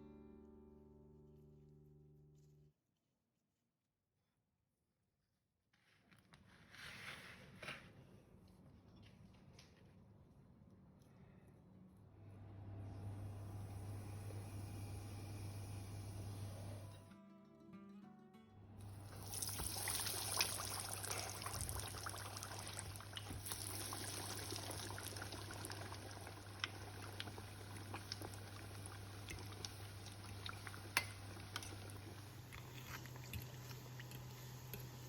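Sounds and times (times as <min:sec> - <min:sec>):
chicken deep frying sizzle: 0:18.9 - 0:35.0.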